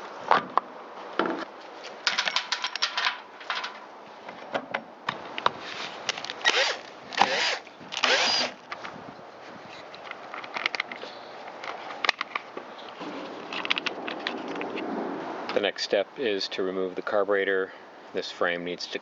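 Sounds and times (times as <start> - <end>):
tools and parts clicking and rattling: 1.2 - 3.9, 10.0 - 14.7
short rasping bursts: 6.5 - 8.6.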